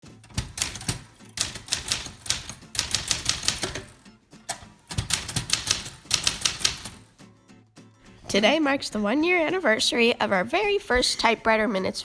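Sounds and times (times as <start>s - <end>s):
manual typewriter key strikes: 0.0s - 7.1s.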